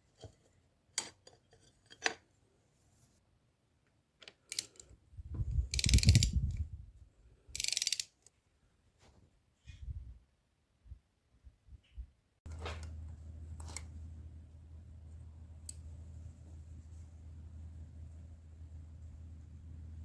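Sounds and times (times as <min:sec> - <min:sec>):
ratcheting rattles: 0:04.3 - 0:06.6, 0:07.5 - 0:08.3
mechanical clicks: 0:05.7 - 0:06.6, 0:07.6 - 0:08.2.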